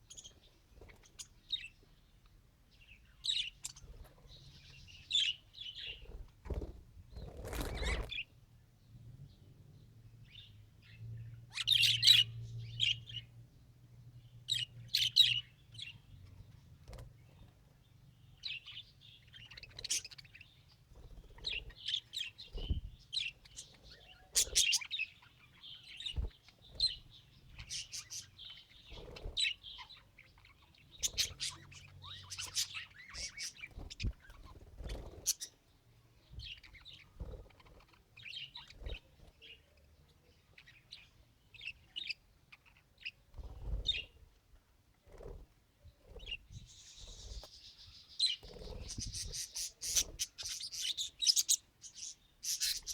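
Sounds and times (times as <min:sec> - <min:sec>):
budgerigar chirping and warbling: 0:23.9 - 0:25.0, 0:31.0 - 0:33.6, 0:48.2 - 0:52.9.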